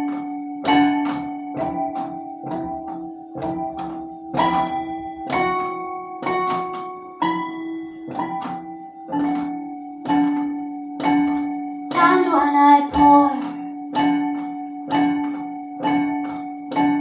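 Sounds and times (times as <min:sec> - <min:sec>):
ringing struck notes: 0:00.0 - 0:17.0
person singing: 0:11.9 - 0:13.8.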